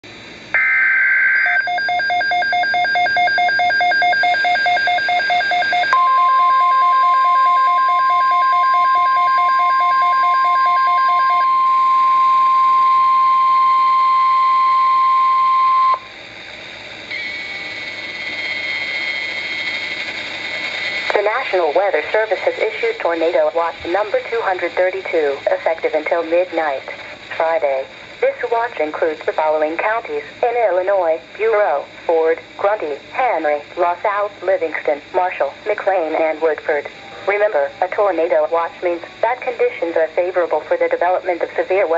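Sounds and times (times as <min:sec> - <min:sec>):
steady warning alarm tone: 0:00.5 - 0:16.2, 0:17.1 - 0:24.7
warbling data tones: 0:00.6 - 0:12.2, 0:17.1 - 0:22.8
rapid pulsing beeps: 0:00.6 - 0:13.0.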